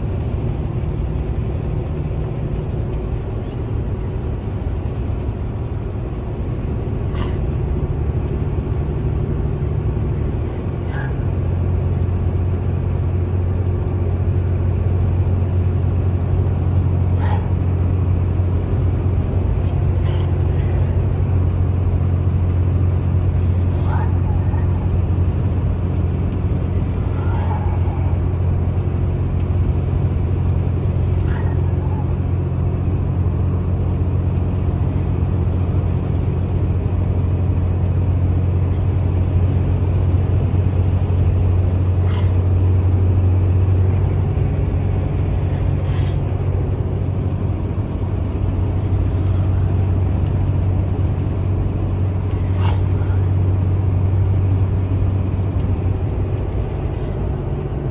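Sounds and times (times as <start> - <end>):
steady low hum: 0.0 - 57.9
person snoring: 6.6 - 7.4, 10.0 - 11.4, 16.4 - 17.8, 19.6 - 21.4, 23.2 - 25.0, 26.6 - 28.4, 30.5 - 32.3, 41.6 - 42.4, 45.3 - 46.2, 48.4 - 50.1, 51.9 - 53.5, 56.4 - 57.9.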